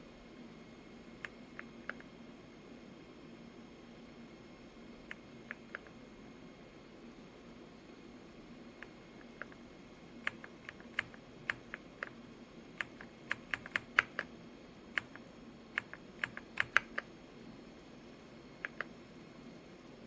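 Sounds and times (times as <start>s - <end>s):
mechanical keyboard typing: 1.2s - 2.1s, 8.8s - 9.6s, 10.2s - 12.2s, 12.8s - 14.3s, 14.9s - 17.1s, 18.6s - 18.9s.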